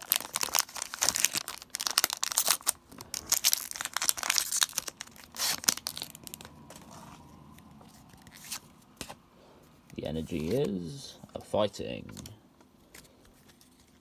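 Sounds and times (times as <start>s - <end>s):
foil wrapper tearing and crinkling: 0.0s - 6.5s.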